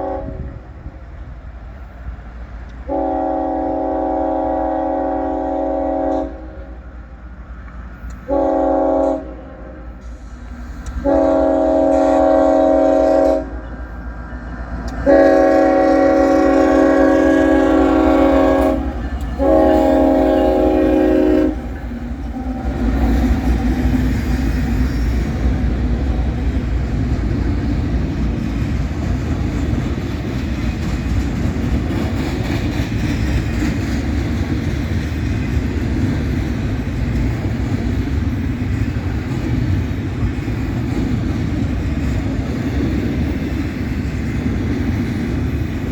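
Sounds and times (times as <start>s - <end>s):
locomotive air horn blasts: 0.0s - 0.6s, 2.9s - 6.8s, 8.2s - 10.0s, 11.0s - 13.8s, 15.0s - 23.2s
train rumbling past: 0.0s - 45.9s
wheels clacking over rail joints: 13.6s - 45.9s.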